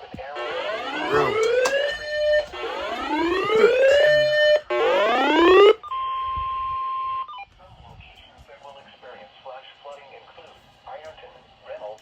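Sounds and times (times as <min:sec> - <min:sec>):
rising whooping alarm: 0:00.4 - 0:06.0
steady single-pitch alert tone: 0:00.5 - 0:05.8.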